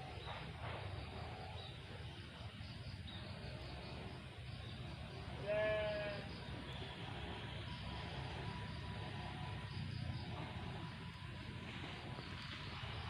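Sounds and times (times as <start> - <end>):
insects chirping: 0.0 - 13.0
animal bleat: 5.4 - 6.3.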